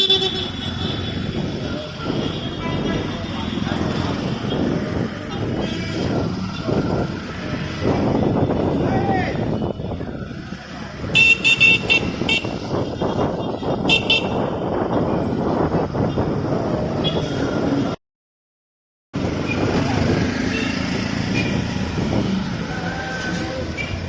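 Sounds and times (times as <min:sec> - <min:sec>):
car horns beeping: 0:00.0 - 0:06.2, 0:11.0 - 0:15.0, 0:20.5 - 0:21.8
busy street traffic: 0:00.0 - 0:18.0, 0:19.2 - 0:24.0.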